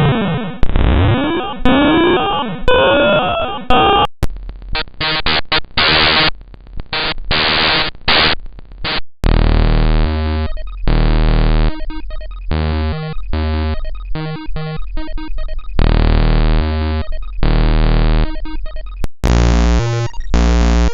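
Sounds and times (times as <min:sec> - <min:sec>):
glitchy buzzing noise bursts: 0:00.0 - 0:20.9
harsh electronic beeps: 0:00.8 - 0:04.2, 0:10.0 - 0:20.9
stepping low bass tones: 0:08.5 - 0:20.9.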